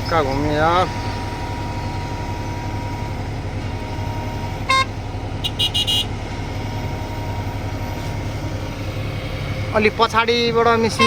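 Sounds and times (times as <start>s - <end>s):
heavy diesel engines droning: 0.0s - 11.0s
horn toot: 4.6s - 6.1s.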